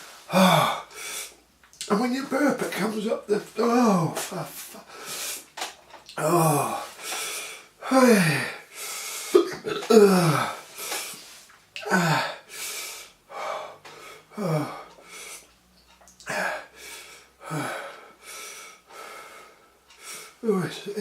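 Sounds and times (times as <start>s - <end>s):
man breathing hard: 0.2s - 1.4s, 4.8s - 5.5s, 6.2s - 9.4s, 10.0s - 15.5s, 16.3s - 20.4s
man groaning in pain: 0.3s - 0.9s, 6.2s - 6.9s, 7.8s - 8.6s, 9.7s - 10.6s, 11.8s - 12.4s, 14.4s - 14.8s.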